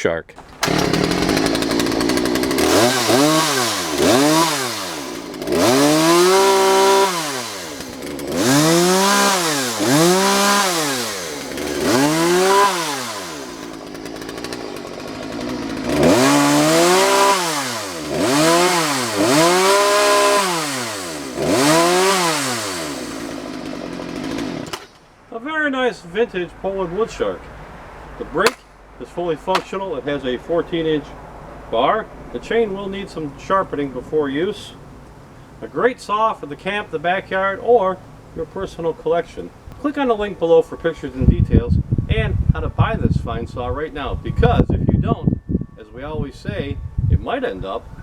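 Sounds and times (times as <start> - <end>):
chainsaw revving: 0.4 - 25.0, 29.5 - 29.7.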